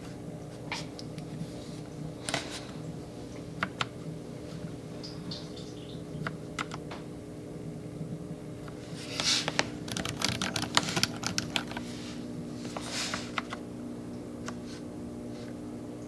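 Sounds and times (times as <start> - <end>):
typing on mechanical keyboard: 6.2 - 6.8, 9.6 - 11.8.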